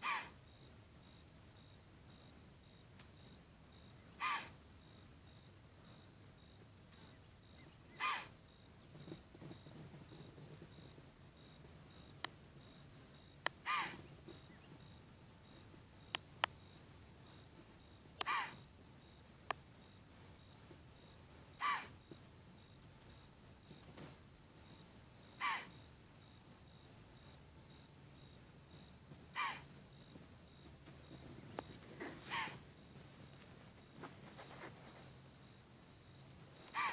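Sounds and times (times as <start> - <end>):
deer alarm snorts: 32.0 - 32.6.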